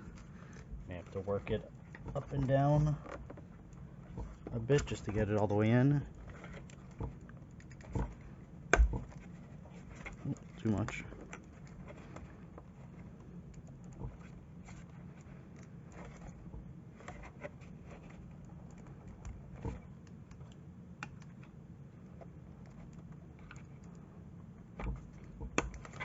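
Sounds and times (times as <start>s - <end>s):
plastic parts clicking and rubbing: 0.0s - 24.0s, 24.8s - 26.0s
steady low hum: 0.0s - 26.0s.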